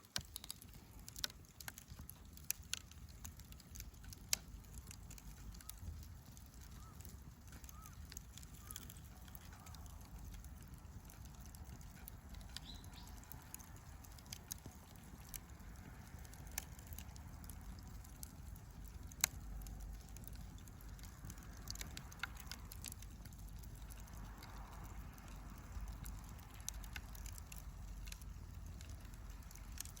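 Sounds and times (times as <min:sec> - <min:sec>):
campfire crackling: 0:00.0 - 0:30.0
sharp fire pops: 0:00.0 - 0:30.0.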